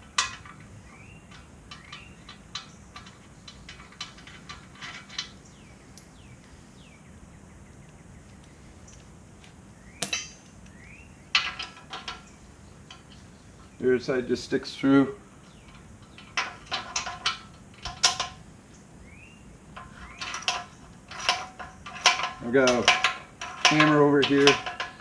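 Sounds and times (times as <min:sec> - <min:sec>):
hand tools clinking on steel: 0:00.0 - 0:06.1, 0:10.0 - 0:13.3, 0:14.4 - 0:18.4, 0:19.8 - 0:25.0.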